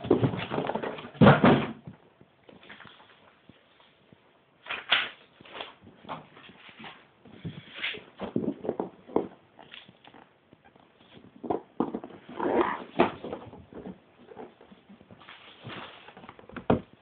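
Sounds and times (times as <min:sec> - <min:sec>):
rustling of box and paper: 0:04.7 - 0:09.0, 0:11.9 - 0:16.5.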